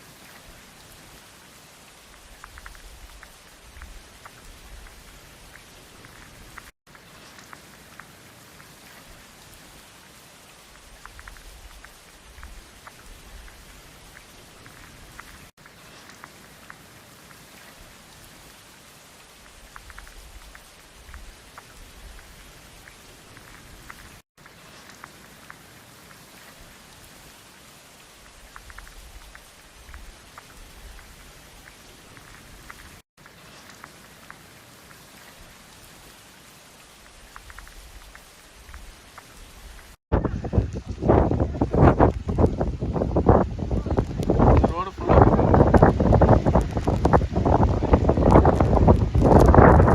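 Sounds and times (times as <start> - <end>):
heavy rain: 0.0 - 49.9
drip ticks: 1.9 - 40.0.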